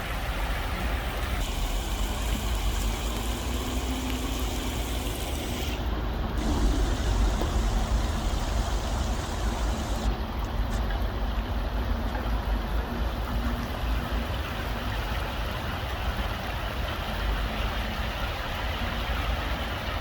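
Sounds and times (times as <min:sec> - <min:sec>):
road traffic rumble: 0:00.0 - 0:13.3
shallow stream flowing: 0:00.0 - 0:20.0.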